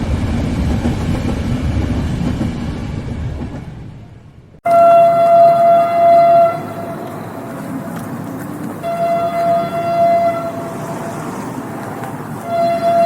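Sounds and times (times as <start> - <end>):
train rumbling: 0.0 - 13.0
train horn blast: 4.6 - 8.0, 8.8 - 11.6, 12.4 - 13.0.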